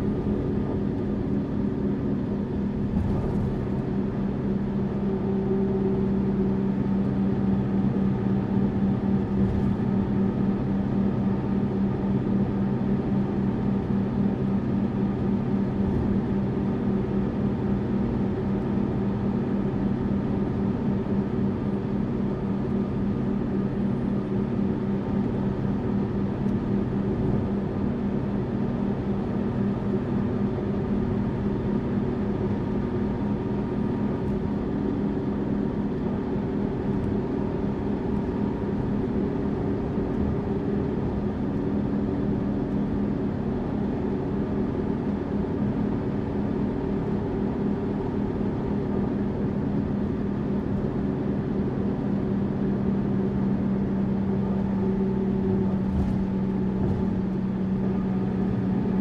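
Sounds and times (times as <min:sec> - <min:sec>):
bus engine running: 0:00.0 - 0:59.0
road noise: 0:54.6 - 0:59.0.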